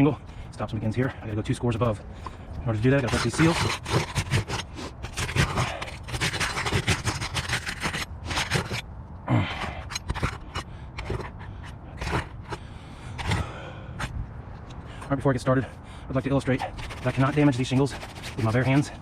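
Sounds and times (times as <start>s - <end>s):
roof shingles scraping and crackling: 0.0s - 8.8s, 16.3s - 19.0s.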